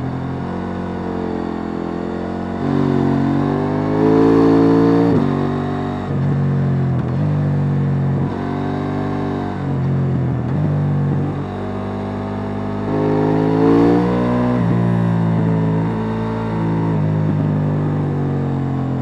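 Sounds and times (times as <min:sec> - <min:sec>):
motorcycle engine accelerating: 0:00.0 - 0:19.0.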